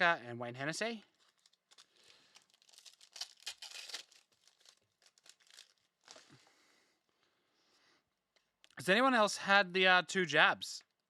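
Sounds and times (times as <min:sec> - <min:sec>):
card pack wrapper crinkling and tearing: 0:01.1 - 0:06.4.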